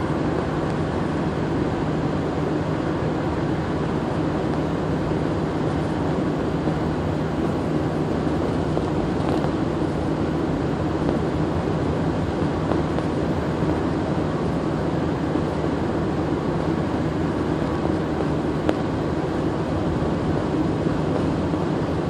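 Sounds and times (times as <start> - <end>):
car road and engine noise: 0.0 - 22.0.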